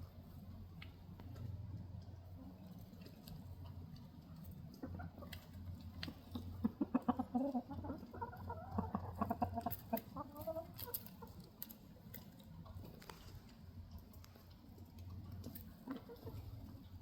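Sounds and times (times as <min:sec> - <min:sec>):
chicken clucking: 0:02.3 - 0:13.0, 0:14.5 - 0:17.0.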